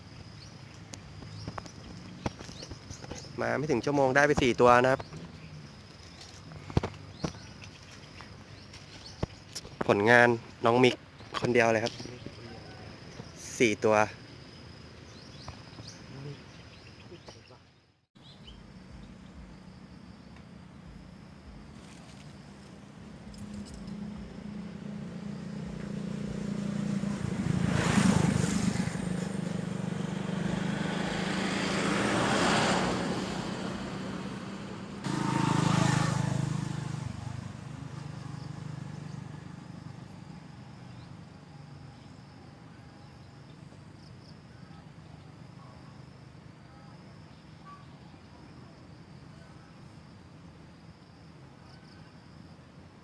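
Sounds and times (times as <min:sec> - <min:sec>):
motor vehicles passing: 0:00.0 - 0:16.9, 0:18.4 - 0:46.7
engine cutting in: 0:23.3 - 0:40.3.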